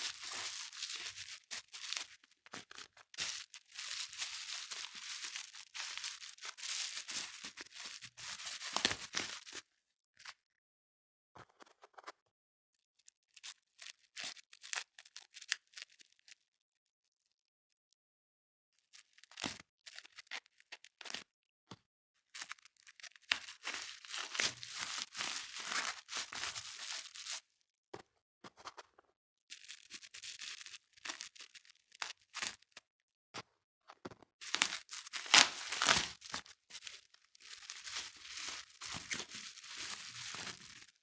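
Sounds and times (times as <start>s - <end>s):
packaging rustling: 0.0s - 9.6s, 23.4s - 27.4s, 34.4s - 41.0s
packaging tearing and crinkling: 0.0s - 9.6s, 22.4s - 27.4s, 34.4s - 41.0s.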